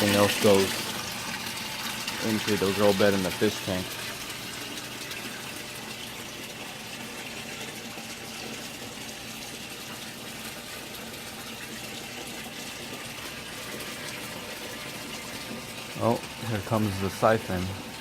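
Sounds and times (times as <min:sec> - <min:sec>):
water pouring and splashing: 0:00.0 - 0:18.0.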